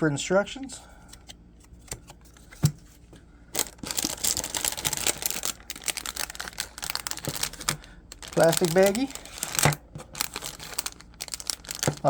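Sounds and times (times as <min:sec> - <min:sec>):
plastic packaging crinkling: 0:03.5 - 0:12.0.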